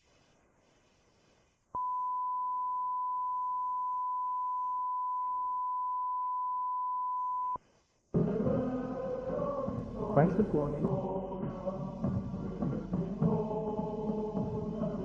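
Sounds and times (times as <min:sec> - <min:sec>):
high electronic beep tone: 0:01.8 - 0:07.6.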